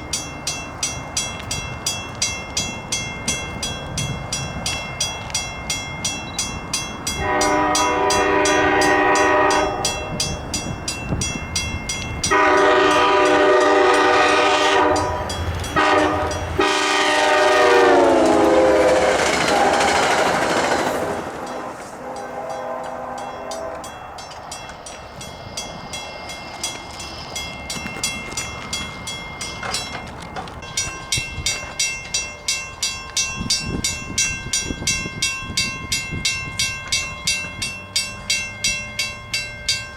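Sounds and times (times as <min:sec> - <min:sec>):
rush of passing train: 0:00.0 - 0:39.9
locomotive horn blasts: 0:07.2 - 0:10.3, 0:12.2 - 0:20.1, 0:21.4 - 0:23.9.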